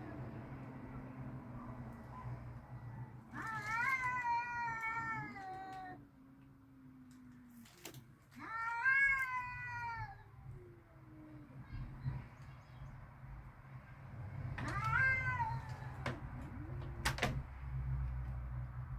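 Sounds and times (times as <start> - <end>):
cats yowling: 1.0 - 7.6, 8.3 - 12.3, 14.5 - 17.4
low drawn-out cat call: 14.6 - 17.0.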